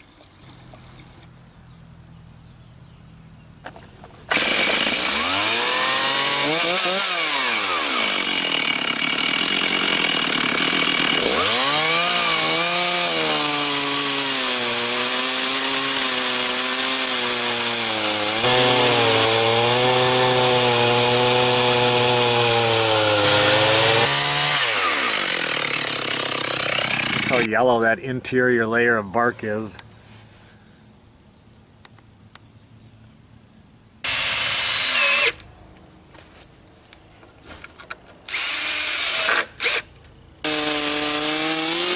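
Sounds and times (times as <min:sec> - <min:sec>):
chainsaw cutting log: 0:03.7 - 0:27.5, 0:34.0 - 0:35.4, 0:38.3 - 0:41.9.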